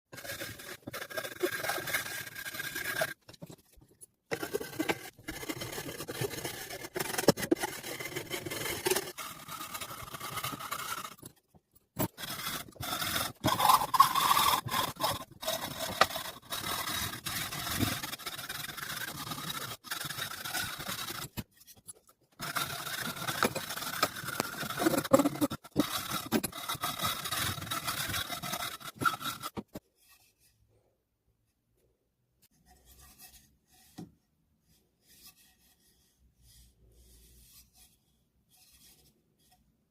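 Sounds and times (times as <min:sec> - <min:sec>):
hand tools scraping wood: 0:00.1 - 0:30.3.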